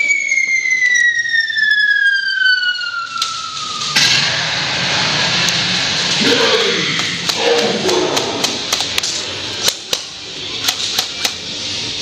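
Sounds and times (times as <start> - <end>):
siren-like falling tone: 0.0 - 7.9
loud rush of noise: 3.2 - 10.6.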